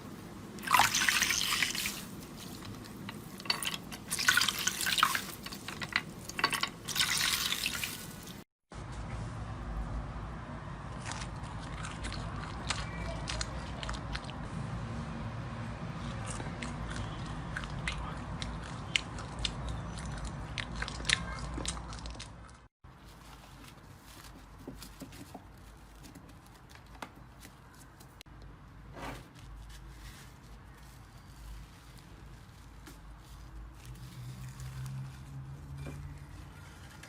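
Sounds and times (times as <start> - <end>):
brittle material crunching: 0.6 - 8.4, 29.2 - 37.0.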